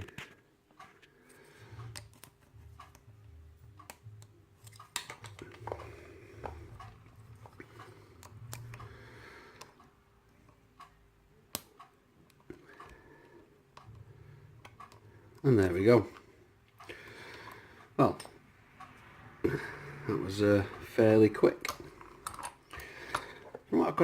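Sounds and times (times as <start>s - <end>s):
lock pick clicks and scraping: 21.6s - 23.6s.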